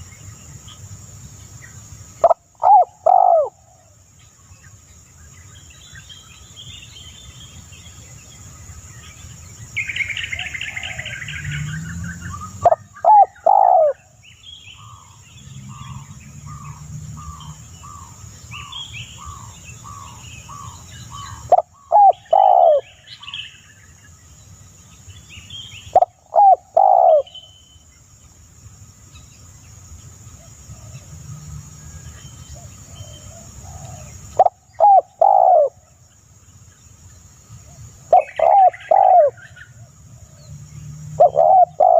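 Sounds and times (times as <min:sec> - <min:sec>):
buzzy bird trill: 0:41.1 - 0:41.9.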